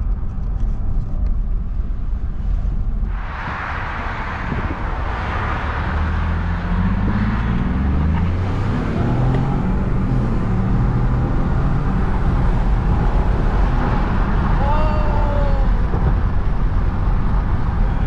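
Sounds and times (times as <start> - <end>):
road noise rush: 0.0 - 18.0
car engine accelerating: 3.0 - 18.0.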